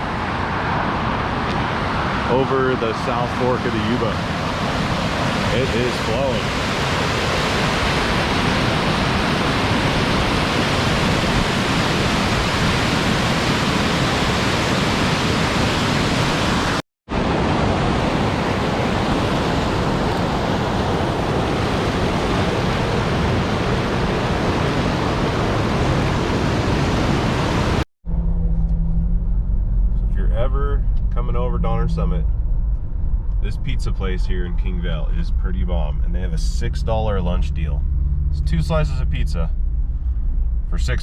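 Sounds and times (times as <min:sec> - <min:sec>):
fast-flowing water rushing: 0:01.5 - 0:27.8
car engine hum from inside: 0:28.1 - 0:34.8, 0:36.2 - 0:41.0.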